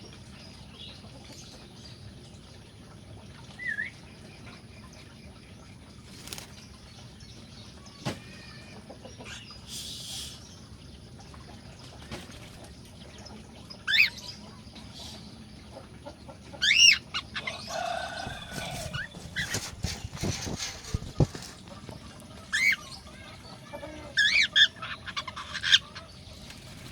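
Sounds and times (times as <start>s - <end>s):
cockatiels calling: 13.9s - 14.2s, 16.6s - 26.9s
cage rustling: 17.6s - 22.8s.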